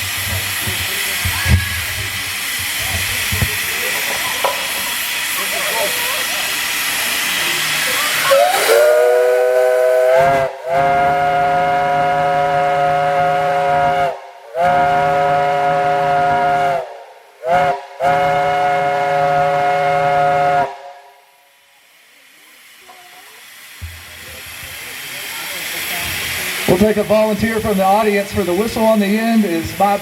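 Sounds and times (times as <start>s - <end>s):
steam whistle chord blasts: 8.2s - 21.5s.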